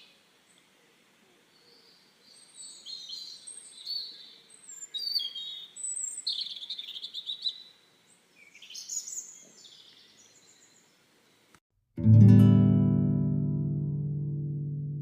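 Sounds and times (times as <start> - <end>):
small birds chirping: 0.0 - 11.6
plucked guitar note: 12.0 - 15.0.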